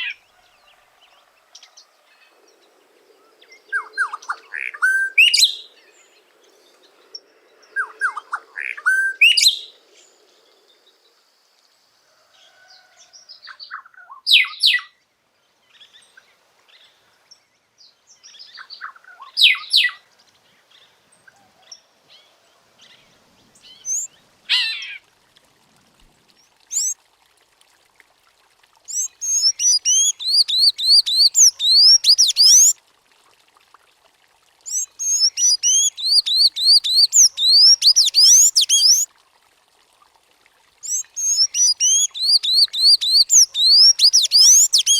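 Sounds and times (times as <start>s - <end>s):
bird singing whistled phrases: 26.7s - 27.0s, 28.9s - 32.8s, 34.7s - 39.1s, 40.8s - 44.9s
high squeaky bird notes: 26.7s - 27.0s, 28.9s - 32.7s, 34.7s - 39.0s, 40.9s - 44.9s.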